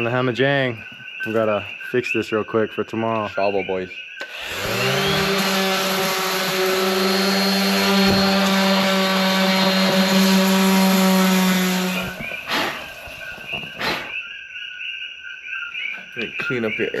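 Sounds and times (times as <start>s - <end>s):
power tool motor running: 4.2s - 14.2s.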